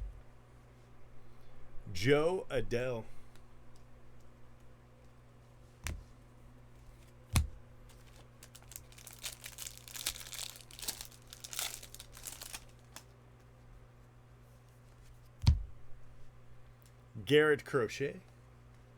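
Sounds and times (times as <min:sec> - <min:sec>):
wrapper crinkling and tearing: 0:07.9 - 0:13.1
thuds on table: 0:15.4 - 0:15.7.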